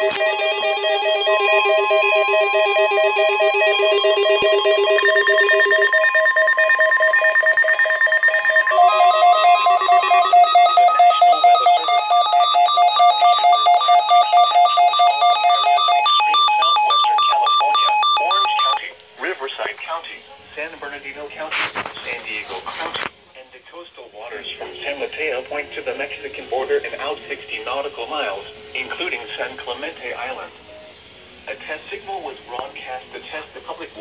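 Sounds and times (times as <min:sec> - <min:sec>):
synthesized electronic tones trilling: 0:00.0 - 0:18.8.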